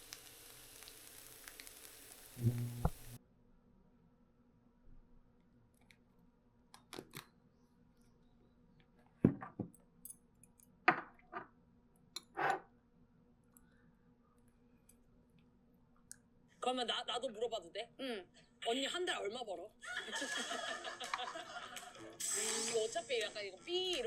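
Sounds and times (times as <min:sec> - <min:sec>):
low room hum: 0:00.0 - 0:09.2.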